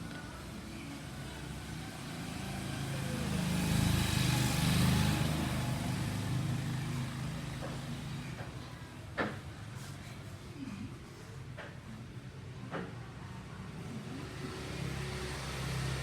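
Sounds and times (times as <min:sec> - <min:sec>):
vehicle engine passing by: 0:01.0 - 0:08.7, 0:13.6 - 0:16.0.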